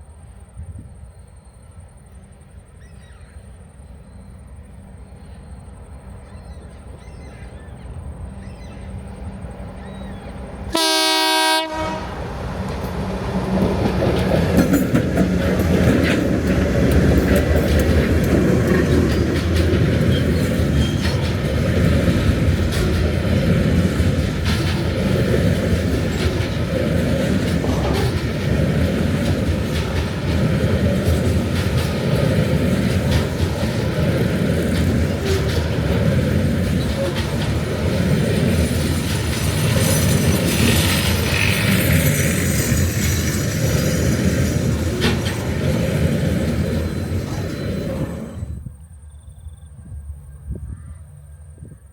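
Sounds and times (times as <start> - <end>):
diesel locomotive horn blast: 10.7 - 12.6
wheels clattering over rail joints: 11.8 - 48.6.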